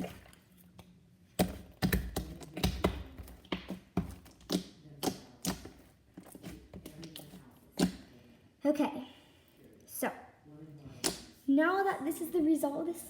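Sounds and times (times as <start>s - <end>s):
slime kneaded and stretched: 1.3s - 8.1s.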